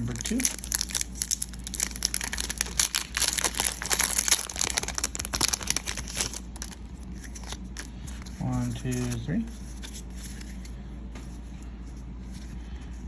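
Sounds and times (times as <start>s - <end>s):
foil wrapper crinkling and tearing: 0.0s - 8.1s.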